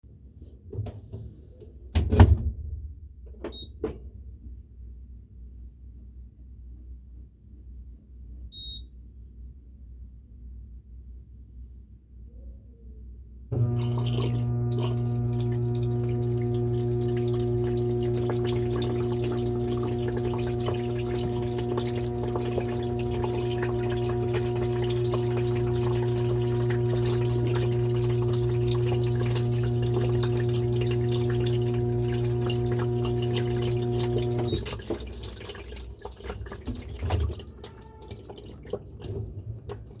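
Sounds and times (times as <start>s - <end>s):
washing machine humming: 13.5s - 40.0s
water splashing and dripping: 13.6s - 40.0s.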